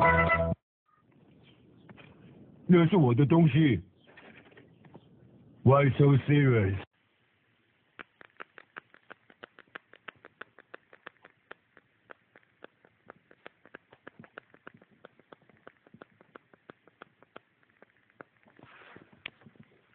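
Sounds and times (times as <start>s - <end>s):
fast sharp clicks: 8.0s - 18.6s.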